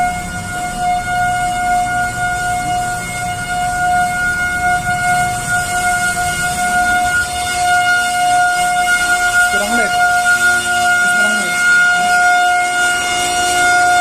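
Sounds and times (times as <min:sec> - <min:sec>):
siren steady tone: 0:00.0 - 0:14.0.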